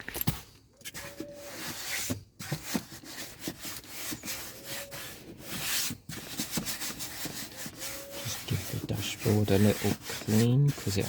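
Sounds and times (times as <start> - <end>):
cloth rubbing plastic dashboard: 0.8 - 11.0
faint squeaks: 7.7 - 11.0.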